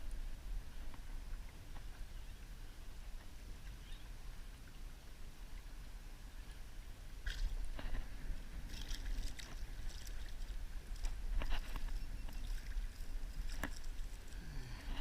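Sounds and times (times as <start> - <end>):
wind rumble on microphone: 0.0 - 15.0
water knocks and splashes: 7.2 - 14.2.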